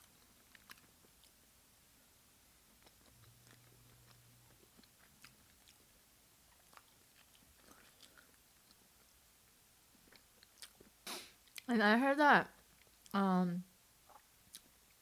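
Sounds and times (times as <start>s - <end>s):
wet chewing mouth clicks: 6.5s - 8.8s, 14.1s - 14.7s.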